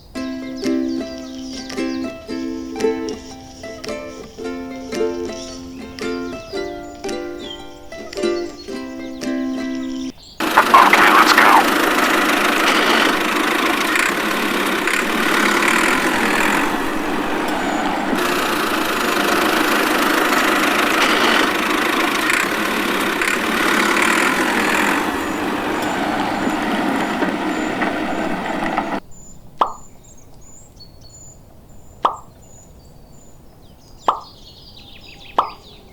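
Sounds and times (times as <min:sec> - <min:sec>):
small engine running unevenly: 0:10.4 - 0:29.0.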